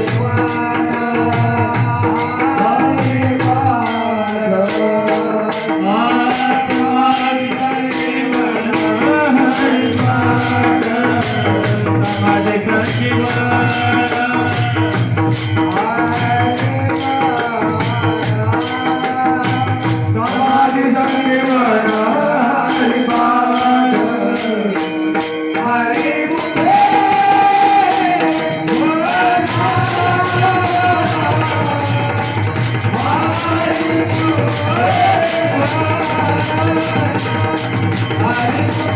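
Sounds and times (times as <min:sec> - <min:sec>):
man singing devotional song: 0:00.0 - 0:38.9
small hand cymbals: 0:00.0 - 0:38.9
hand drum beating: 0:25.6 - 0:38.9.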